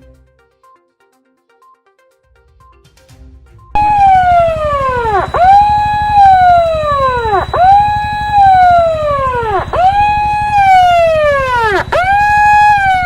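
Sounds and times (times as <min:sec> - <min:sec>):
siren wailing: 0:03.8 - 0:13.0.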